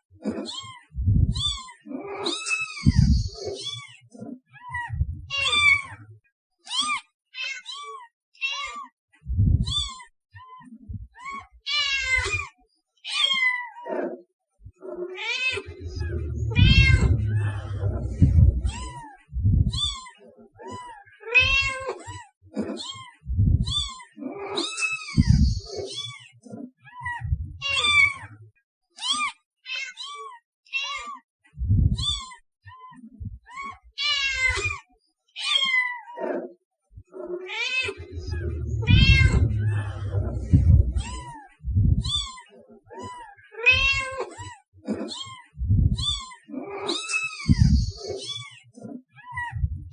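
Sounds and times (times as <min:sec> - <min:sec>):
cats meowing: 0:00.2 - 0:04.0, 0:04.6 - 0:06.0, 0:06.7 - 0:08.9, 0:09.6 - 0:14.1, 0:14.9 - 0:26.3, 0:26.9 - 0:28.3, 0:29.0 - 0:31.2, 0:31.9 - 0:34.8, 0:35.4 - 0:36.4, 0:37.2 - 0:49.9
low thumps: 0:01.0 - 0:01.4, 0:02.8 - 0:03.2, 0:04.9 - 0:05.3, 0:09.3 - 0:09.7, 0:15.7 - 0:19.8, 0:23.3 - 0:23.7, 0:25.2 - 0:25.6, 0:27.2 - 0:27.6, 0:31.6 - 0:32.0, 0:38.1 - 0:42.1, 0:45.6 - 0:46.0, 0:47.5 - 0:47.8, 0:49.6 - 0:49.9.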